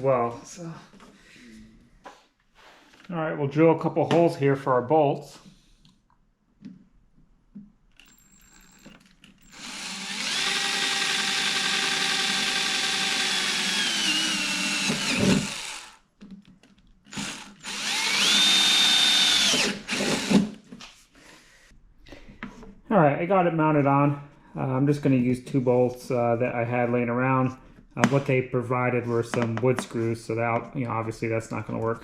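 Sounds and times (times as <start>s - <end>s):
power drill boring metal: 8.1s - 16.0s, 17.1s - 20.5s.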